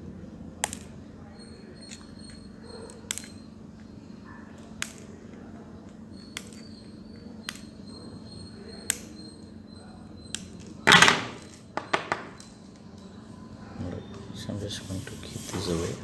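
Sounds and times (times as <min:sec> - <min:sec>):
pliers snipping wire: 0:00.6 - 0:00.9, 0:03.1 - 0:03.4, 0:04.6 - 0:05.1, 0:06.2 - 0:06.7.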